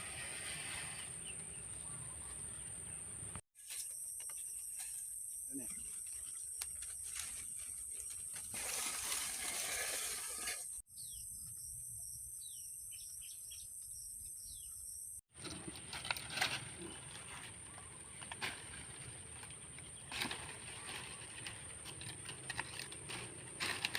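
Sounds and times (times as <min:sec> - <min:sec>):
rustles and clicks: 0:15.4 - 0:23.9.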